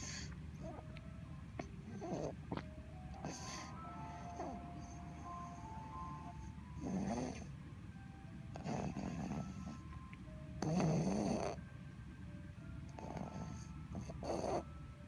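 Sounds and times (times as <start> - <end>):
child snoring: 0.0 - 0.8, 1.6 - 7.5, 8.6 - 9.9, 10.6 - 11.6, 12.9 - 14.8
faint music: 0.0 - 15.0.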